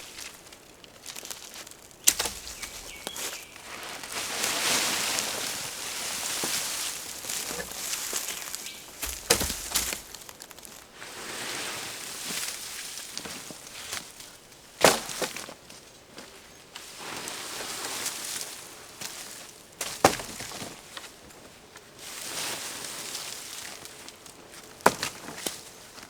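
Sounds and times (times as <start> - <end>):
leafy debris rustling: 0.0 - 26.0
wooden poles knocking and cracking: 2.0 - 3.5, 6.4 - 10.8.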